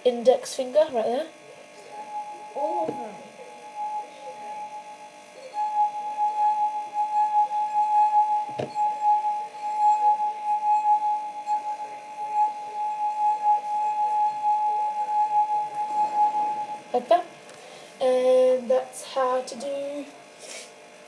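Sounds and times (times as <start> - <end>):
singing glass tone: 1.6 - 17.2.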